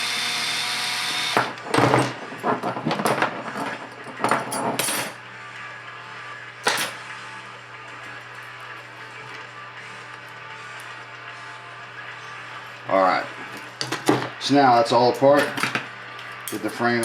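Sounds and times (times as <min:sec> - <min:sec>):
drill running: 0:00.0 - 0:01.6
hard parts clattering: 0:01.6 - 0:05.2, 0:13.4 - 0:14.4, 0:15.2 - 0:17.0.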